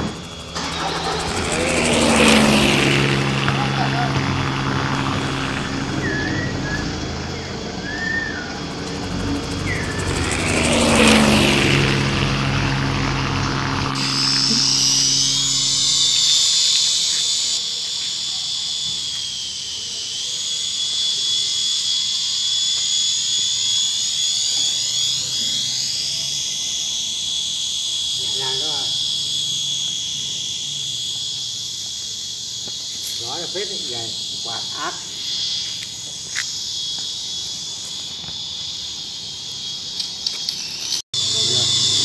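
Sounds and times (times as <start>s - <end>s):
toy helicopter rotor whine: 0.0s - 42.0s
whoosh: 0.6s - 15.8s.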